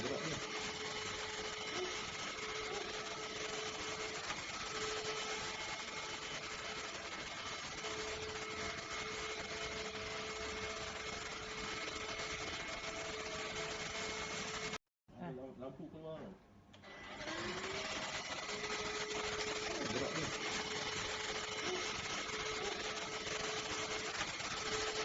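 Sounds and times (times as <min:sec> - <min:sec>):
cordless vacuum cleaner running: 0:00.0 - 0:14.8, 0:16.8 - 0:25.0.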